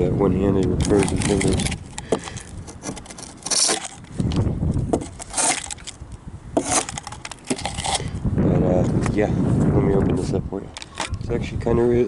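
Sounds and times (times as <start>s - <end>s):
metal box clinking: 0.8s - 4.1s
short scraping rasps: 0.8s - 4.3s, 4.9s - 6.0s, 6.6s - 8.2s.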